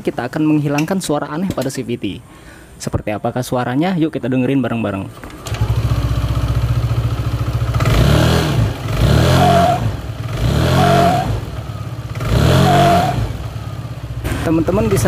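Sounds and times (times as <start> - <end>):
scooter engine idling and revving: 5.2 - 15.0.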